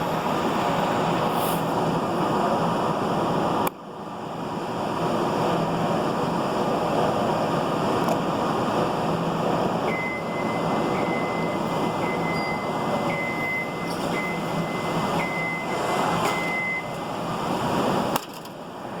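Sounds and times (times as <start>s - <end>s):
high electronic alarm beeps: 9.8s - 17.3s.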